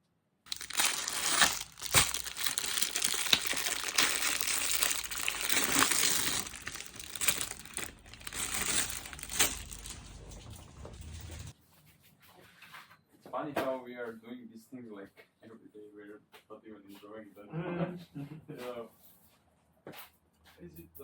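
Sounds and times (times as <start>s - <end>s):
packaging crinkling and rustling: 0.5s - 11.5s.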